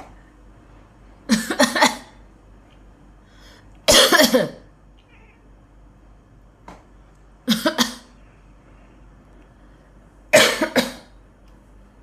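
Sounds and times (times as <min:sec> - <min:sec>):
person coughing: 0:01.3 - 0:02.2, 0:03.9 - 0:04.6, 0:07.4 - 0:08.2, 0:10.3 - 0:11.2.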